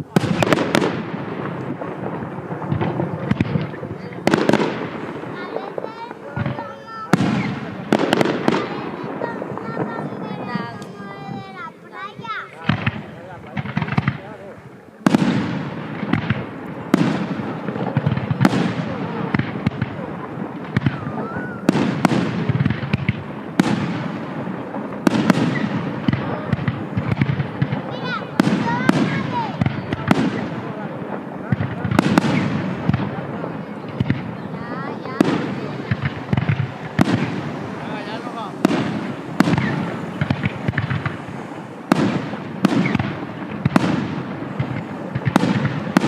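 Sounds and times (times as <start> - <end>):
fireworks bangs: 0.0 - 46.0
fireworks crackling: 0.0 - 46.0
firework whistle: 15.1 - 46.0.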